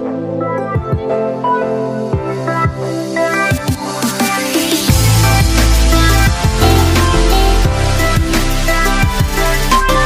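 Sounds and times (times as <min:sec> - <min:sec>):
electronic music with drum beat: 0:02.1 - 0:10.0
heavy bass drop: 0:04.9 - 0:09.6.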